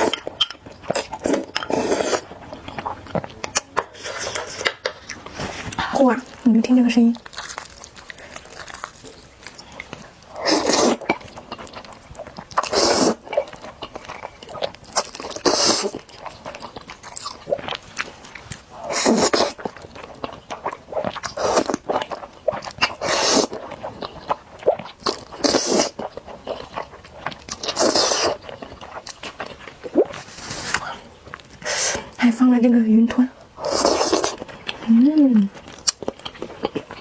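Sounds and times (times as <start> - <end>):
soft chewing and mouth clicks: 0.0 - 32.3, 33.0 - 37.0
loud eating noises: 0.0 - 37.0.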